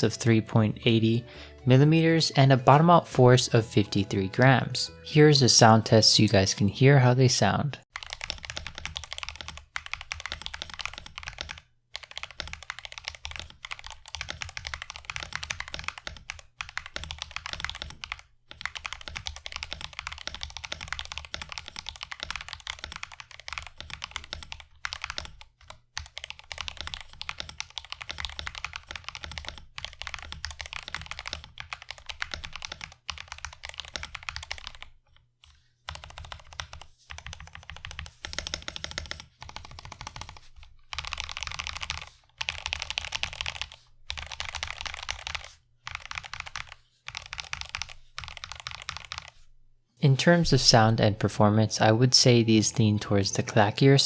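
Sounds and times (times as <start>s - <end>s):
mechanical keyboard typing: 7.9s - 34.9s, 35.9s - 49.4s.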